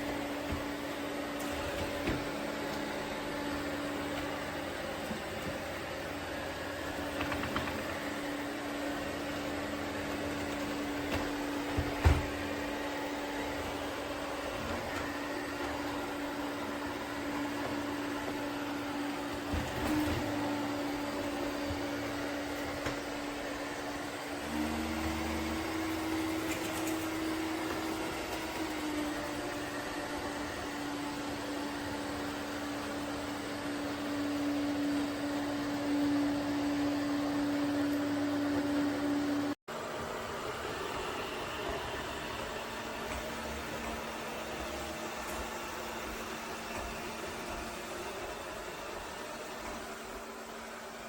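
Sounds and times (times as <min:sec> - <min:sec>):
robot vacuum motor hum: 0:00.0 - 0:51.0.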